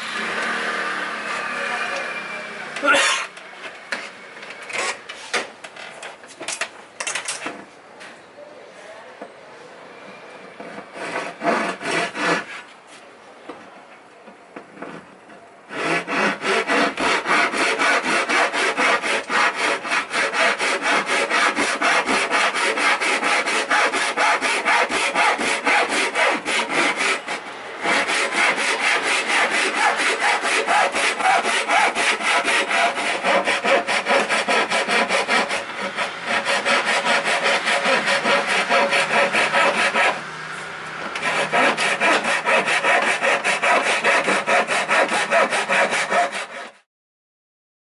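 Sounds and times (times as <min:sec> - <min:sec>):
hand tool strokes on wood: 0:15.7 - 0:46.8.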